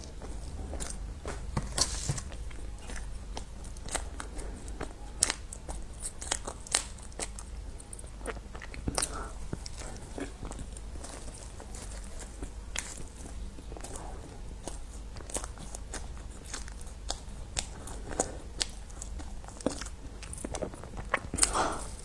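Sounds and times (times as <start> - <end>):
steady low hum: 0.0 - 22.0
person biting and chewing food: 0.2 - 4.4.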